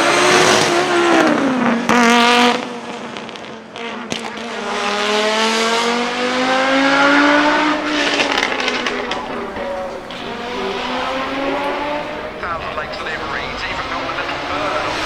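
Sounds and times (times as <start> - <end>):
loud turbocharged car engine: 4.3 - 15.0
sharp exhaust crack: 7.2 - 15.0.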